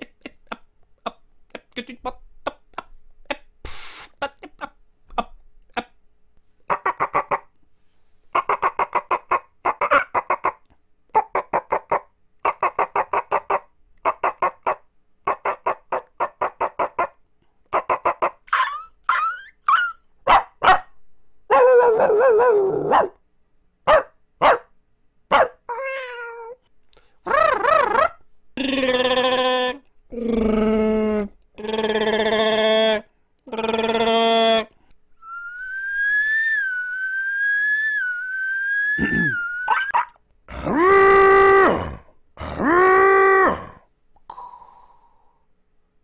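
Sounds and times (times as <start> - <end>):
man imitating dog sounds: 0.0 - 6.0, 6.7 - 7.6, 8.3 - 20.1, 21.5 - 23.2, 27.2 - 34.8, 36.3 - 43.9.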